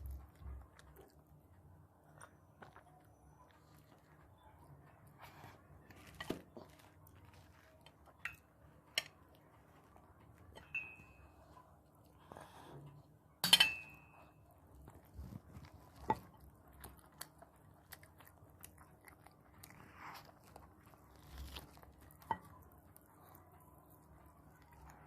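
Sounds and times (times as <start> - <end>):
chewing and mouth noises: 0.0 - 10.5, 14.4 - 25.0
dish or utensil clinking: 13.4 - 14.1.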